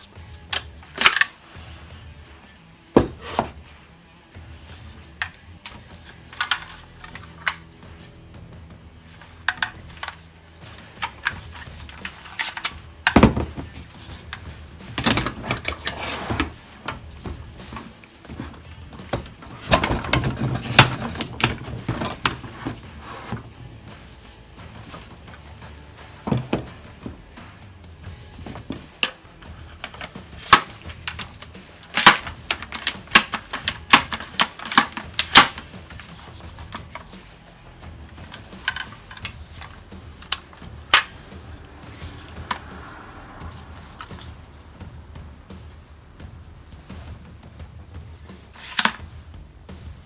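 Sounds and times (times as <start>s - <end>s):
metal clicks and knocks of air rifle: 0.2s - 1.4s, 5.1s - 7.8s, 9.2s - 22.5s, 28.4s - 41.8s, 48.6s - 49.2s.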